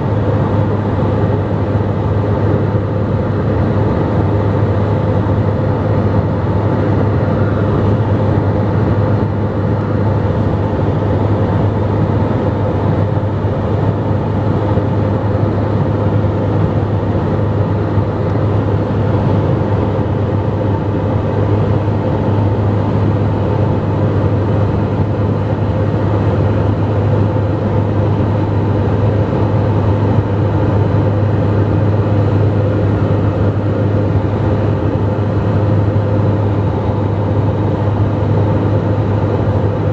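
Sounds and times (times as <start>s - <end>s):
turboprop cabin drone: 0.0s - 39.9s.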